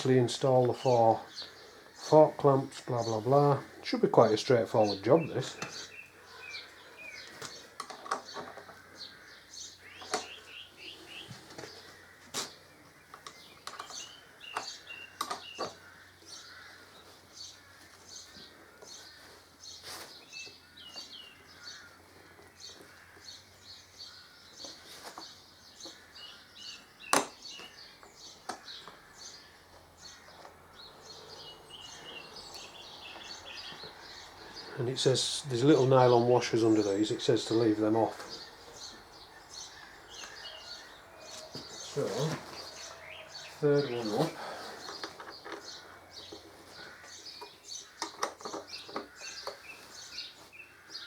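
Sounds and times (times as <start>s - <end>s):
small birds chirping: 0.0s - 51.0s
metal tools clicking and knocking: 48.0s - 49.6s.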